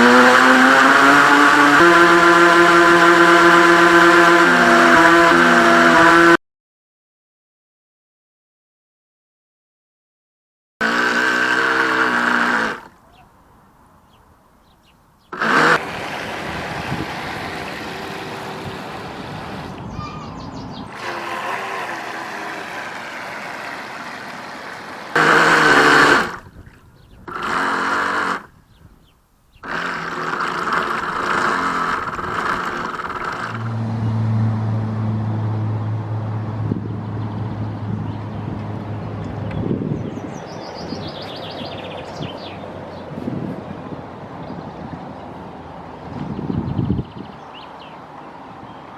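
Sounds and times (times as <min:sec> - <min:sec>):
toy boat motor whine: 0:00.0 - 0:06.4, 0:10.8 - 0:13.0, 0:15.3 - 0:20.1, 0:20.9 - 0:26.5, 0:27.2 - 0:28.5, 0:29.6 - 0:34.3
wind noise: 0:15.4 - 0:21.1, 0:26.2 - 0:27.6, 0:36.5 - 0:47.6.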